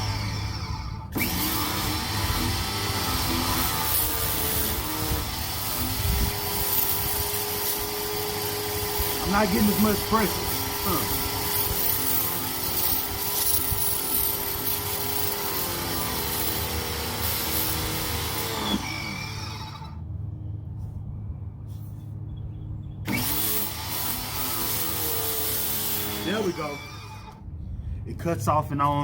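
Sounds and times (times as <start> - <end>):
electric pressure washer spraying: 1.2 - 19.8.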